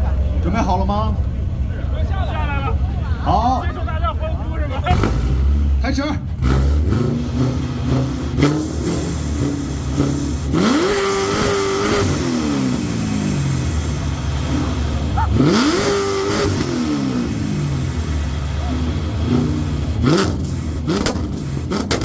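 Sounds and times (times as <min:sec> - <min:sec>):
car engine revving: 0:00.0 - 0:22.0
exhaust pops: 0:04.8 - 0:22.0.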